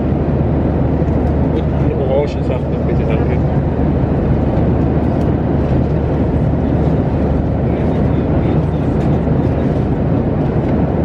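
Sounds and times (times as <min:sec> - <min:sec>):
aircraft cabin drone: 0:00.0 - 0:11.0.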